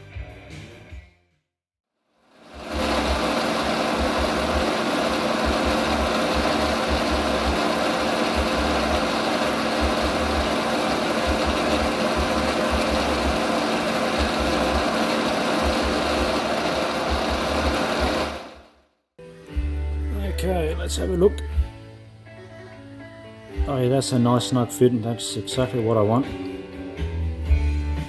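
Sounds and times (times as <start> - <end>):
power tool motor humming: 2.3 - 18.7.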